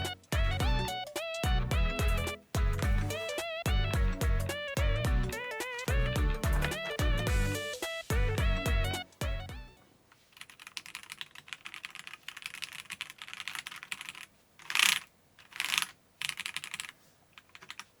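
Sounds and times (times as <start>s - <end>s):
mechanical keyboard typing: 10.4s - 18.0s.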